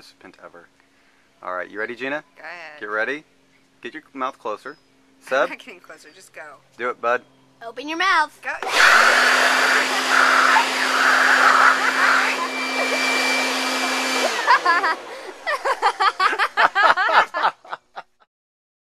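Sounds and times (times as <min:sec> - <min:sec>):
voices: 0:01.4 - 0:03.2, 0:03.8 - 0:15.1
leaf blower running: 0:08.5 - 0:17.2
people laughing: 0:09.3 - 0:18.3.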